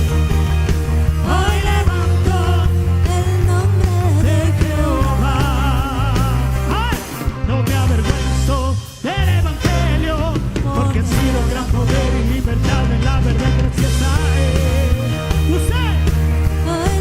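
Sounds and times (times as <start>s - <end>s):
live band playing: 0.0s - 17.0s.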